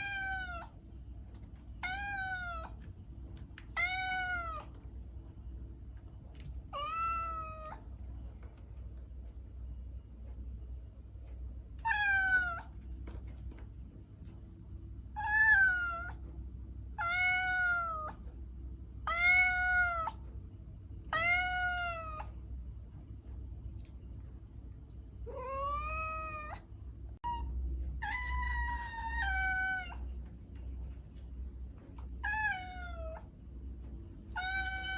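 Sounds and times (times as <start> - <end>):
cat meowing: 0.0 - 0.8, 1.8 - 2.8, 3.6 - 4.8, 6.7 - 7.8, 11.8 - 12.8, 15.2 - 16.2, 17.0 - 18.2, 19.0 - 20.2, 21.1 - 22.3, 25.2 - 26.6, 27.2 - 30.1, 32.2 - 33.3, 34.3 - 34.9
faint low hum: 0.0 - 34.9.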